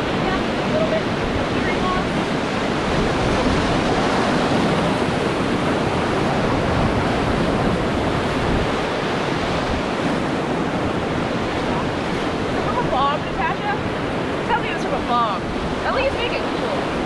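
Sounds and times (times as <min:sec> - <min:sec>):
whitewater rushing: 0:00.0 - 0:17.0.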